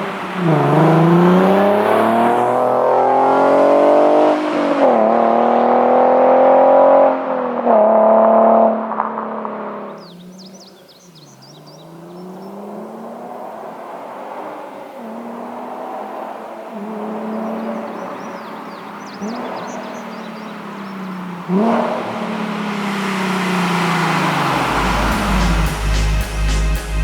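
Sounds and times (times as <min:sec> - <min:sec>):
gear change: 0:00.0 - 0:05.2, 0:11.6 - 0:27.0
car engine revving: 0:00.0 - 0:27.0.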